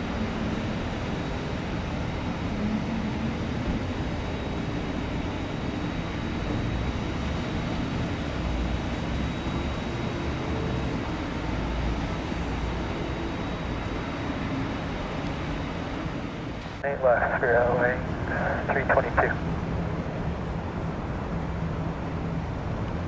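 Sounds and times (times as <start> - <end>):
jet engines rumbling: 11.0 - 23.0
faint high whine: 16.8 - 19.6.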